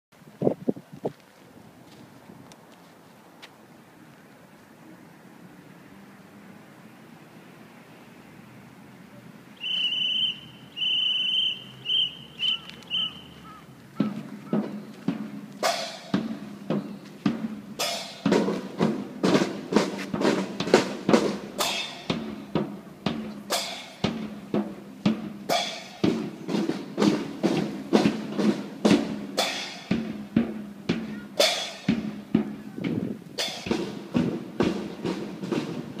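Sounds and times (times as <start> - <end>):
whistle blasts: 9.6 - 13.5
steady drumming: 9.6 - 36.0.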